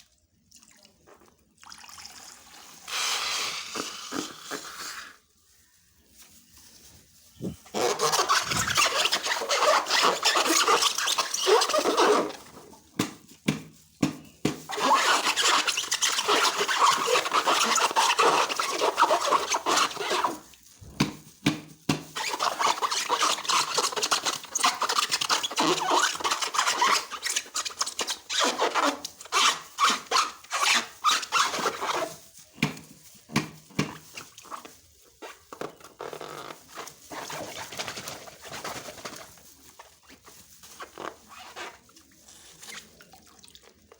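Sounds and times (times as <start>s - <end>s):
slime squelching: 7.3s - 12.5s.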